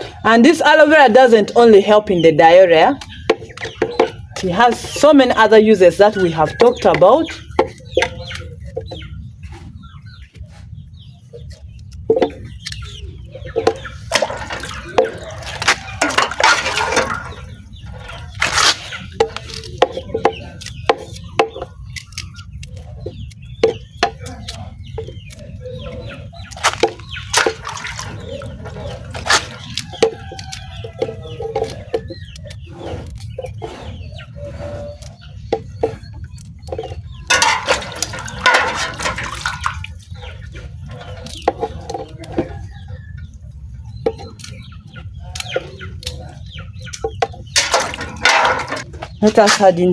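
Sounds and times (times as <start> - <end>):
chickens clucking: 0.0 - 49.9
scraping or rustling: 13.7 - 21.3, 26.5 - 42.6, 47.5 - 49.7.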